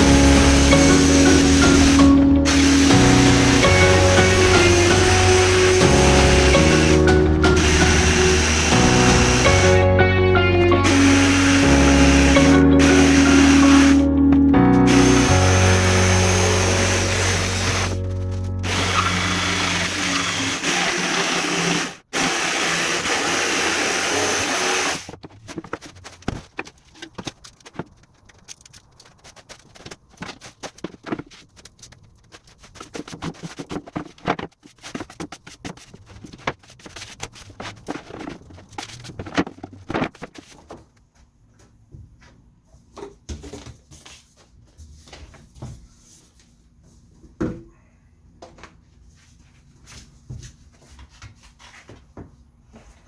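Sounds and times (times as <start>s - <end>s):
loud electric power tool: 0.0s - 10.0s, 10.7s - 14.1s, 14.8s - 18.0s, 18.6s - 25.1s.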